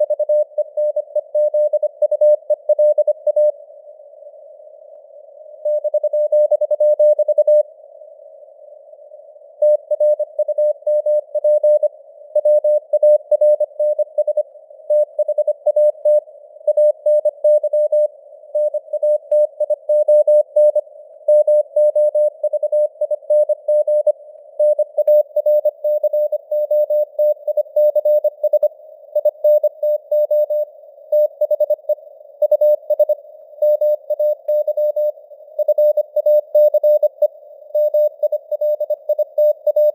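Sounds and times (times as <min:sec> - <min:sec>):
morse code tone: 0:37.8 - 0:39.9.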